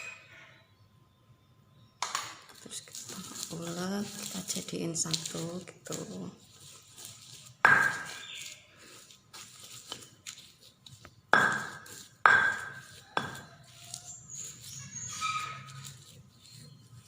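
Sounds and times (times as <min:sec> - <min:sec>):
pestle scraping in mortar: 0:02.9 - 0:17.0
pestle knocks ringing: 0:07.6 - 0:08.2, 0:11.3 - 0:13.5.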